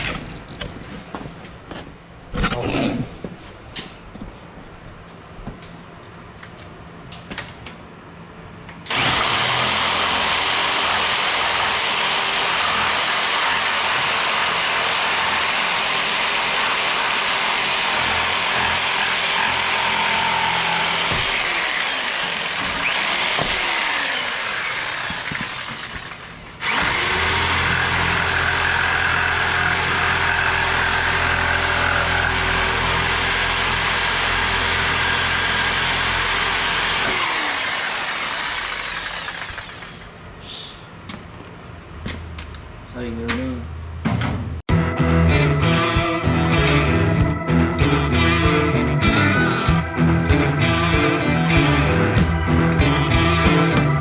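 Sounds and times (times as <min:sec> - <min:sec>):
loud machine humming drone: 0:08.9 - 0:25.7, 0:26.6 - 0:38.8, 0:44.7 - 0:54.0.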